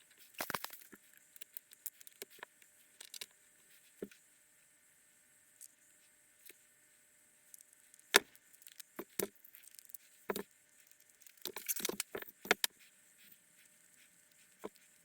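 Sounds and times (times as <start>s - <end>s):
metal parts clicking and clattering: 11.3s - 12.6s.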